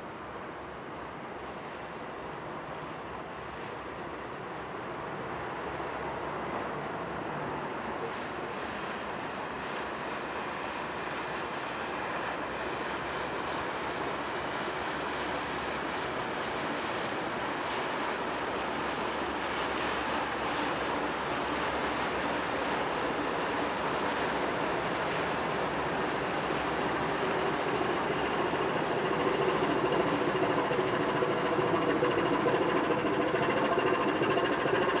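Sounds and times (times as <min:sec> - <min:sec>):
wind: 0:00.0 - 0:35.0
ship engine noise: 0:22.2 - 0:35.0.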